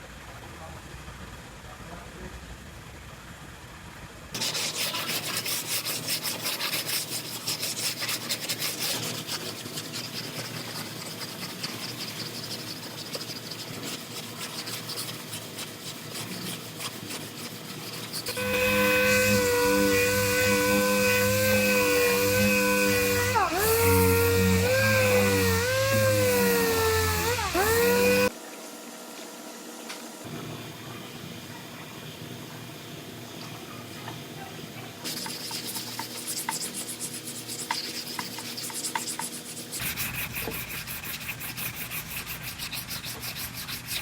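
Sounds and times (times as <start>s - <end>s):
sanding on a car body panel: 4.4s - 28.3s, 35.0s - 44.0s
power tool whining: 18.3s - 28.3s.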